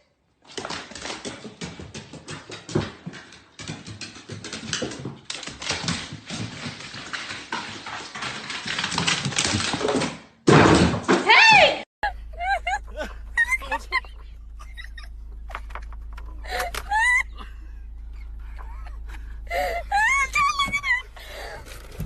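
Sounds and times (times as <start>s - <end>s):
dog claws clicking on floor: 0.4s - 10.2s.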